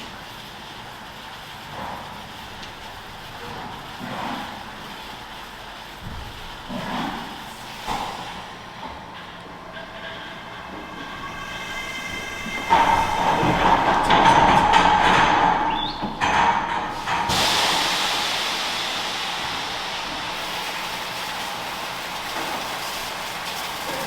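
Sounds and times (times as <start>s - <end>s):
milking machinery running: 0.0s - 24.0s
loud whining hiss: 7.4s - 24.0s
machinery knocks: 9.7s - 17.4s.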